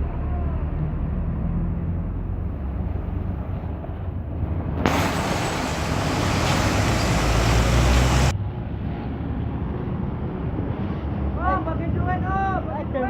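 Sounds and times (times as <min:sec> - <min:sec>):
heavy vehicle engine rumble: 0:00.0 - 0:08.3
road and wind noise hiss: 0:02.2 - 0:13.0.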